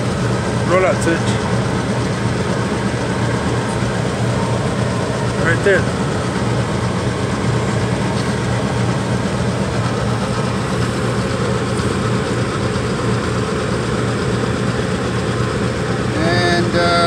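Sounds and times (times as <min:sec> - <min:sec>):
low machine hum: 0:00.0 - 0:17.0.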